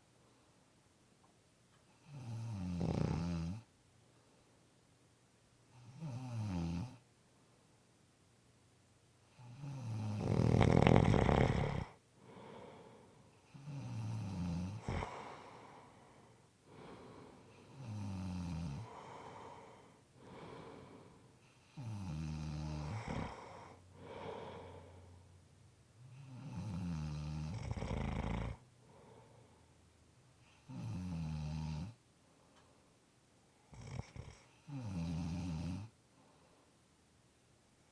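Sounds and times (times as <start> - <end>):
person snoring: 2.1 - 3.6, 9.6 - 16.0, 16.7 - 21.2, 21.8 - 25.1, 26.1 - 28.6.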